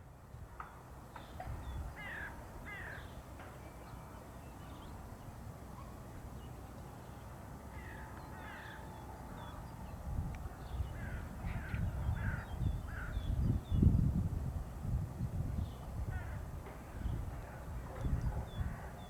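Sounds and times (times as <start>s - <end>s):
birds calling harshly: 10.6s - 13.4s.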